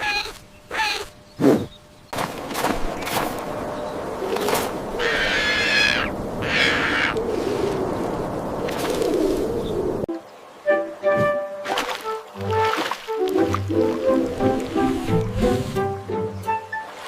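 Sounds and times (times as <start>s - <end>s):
outdoor background noise: 0.0s - 17.0s
birds calling: 2.9s - 7.3s.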